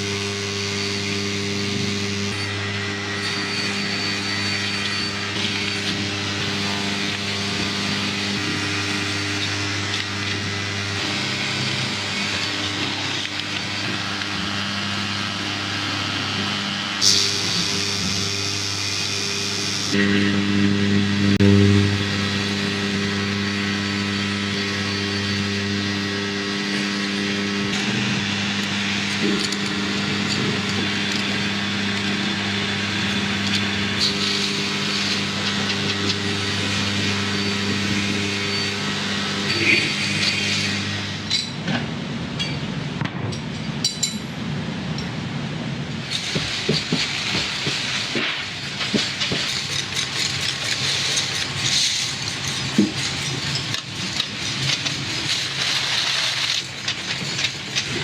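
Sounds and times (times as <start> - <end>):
machine motor hum: 0.0 - 42.3
machine rattling and clattering: 46.1 - 58.0.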